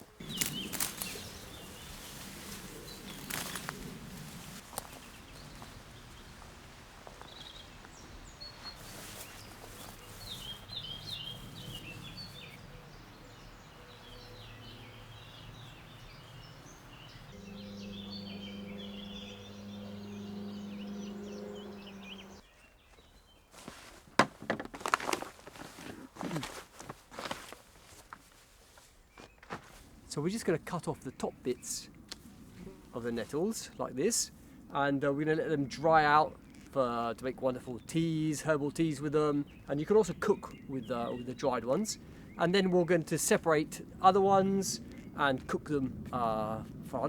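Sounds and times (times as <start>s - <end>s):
birds chirping: 0.0s - 23.9s, 29.0s - 47.0s
low hum: 12.6s - 22.4s
sharp rustles and knocks: 23.6s - 29.8s.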